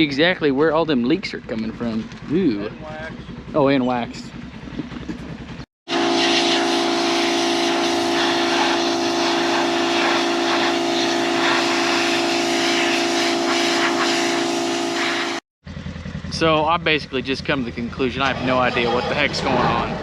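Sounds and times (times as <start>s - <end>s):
pressure washer machine hum: 3.1s - 16.2s
pressure washer water hiss: 6.2s - 15.4s.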